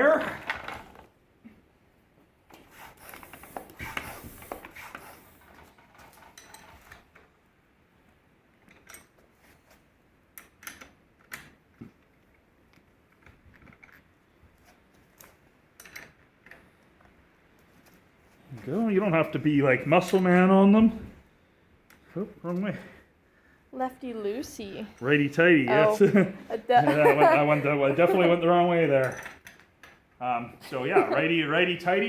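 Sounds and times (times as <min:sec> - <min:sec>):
rubbing and rustling: 0:02.5 - 0:07.2.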